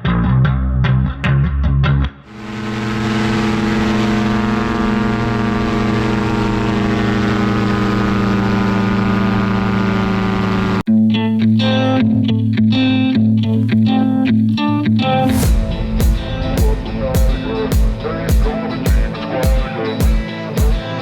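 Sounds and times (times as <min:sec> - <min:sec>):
aircraft engine and propeller drone: 0:02.3 - 0:10.8
wind rushing over microphone: 0:15.2 - 0:18.9.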